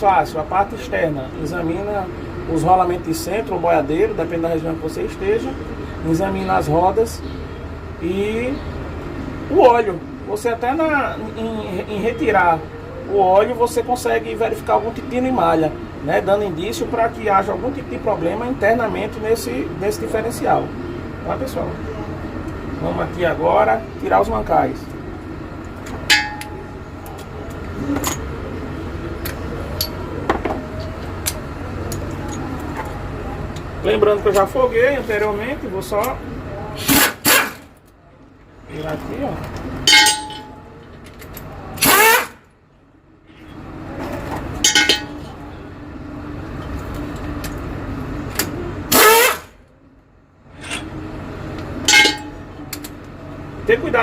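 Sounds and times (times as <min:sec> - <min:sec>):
steady low hum: 0:00.0 - 0:54.0
hand tools clinking on metal: 0:26.1 - 0:26.7, 0:39.8 - 0:42.2, 0:44.6 - 0:45.4, 0:50.6 - 0:50.9, 0:51.9 - 0:52.9.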